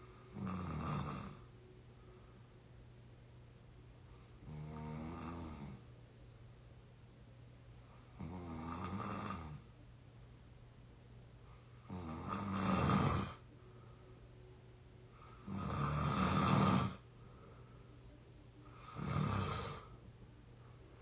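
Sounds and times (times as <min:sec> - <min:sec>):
person snoring: 0:00.2 - 0:01.5, 0:04.4 - 0:05.9, 0:08.2 - 0:09.7, 0:11.8 - 0:13.5, 0:15.2 - 0:17.0, 0:18.6 - 0:20.0.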